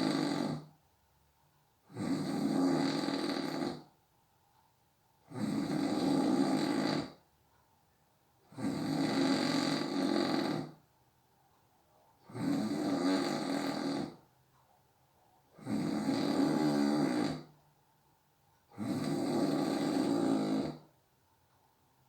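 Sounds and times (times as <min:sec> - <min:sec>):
person snoring: 0:00.0 - 0:00.7, 0:01.9 - 0:03.9, 0:05.3 - 0:07.2, 0:08.5 - 0:10.8, 0:12.2 - 0:14.2, 0:15.6 - 0:17.5, 0:18.7 - 0:20.9.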